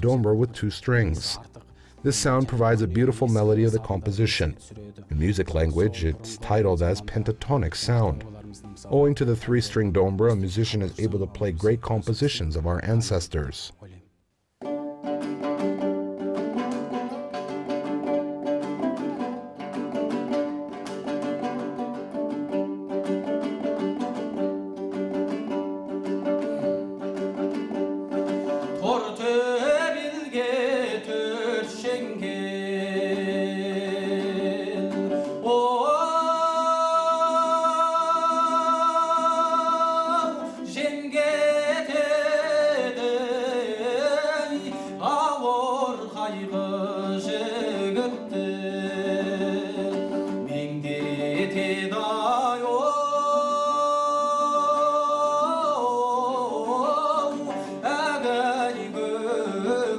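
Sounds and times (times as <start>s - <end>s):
person singing folk song: 0.0s - 14.0s, 15.1s - 59.9s
plucked dombra: 14.6s - 28.9s.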